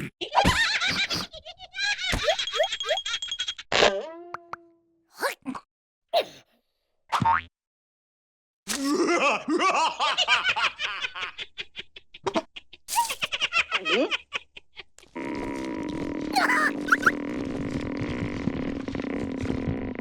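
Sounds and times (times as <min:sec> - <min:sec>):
cartoon voices laughing: 0:00.0 - 0:02.9, 0:12.2 - 0:14.4, 0:16.4 - 0:17.2.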